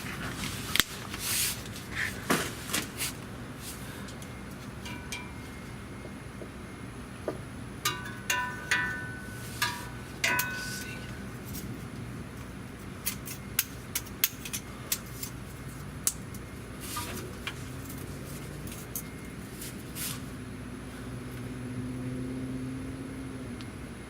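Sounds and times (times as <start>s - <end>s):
steady low hum: 0.0s - 24.0s
metal tools clinking: 4.8s - 5.6s, 7.9s - 11.7s.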